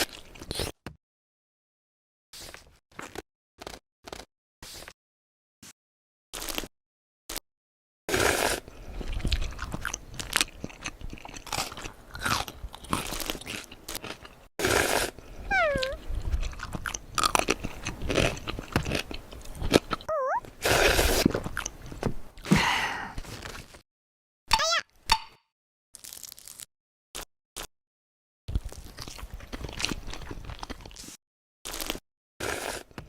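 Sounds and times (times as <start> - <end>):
crunchy chewing of snack food: 0.0 - 0.8, 2.5 - 4.3, 6.4 - 6.7, 8.1 - 22.0, 23.2 - 23.8, 26.0 - 26.7, 28.5 - 33.0.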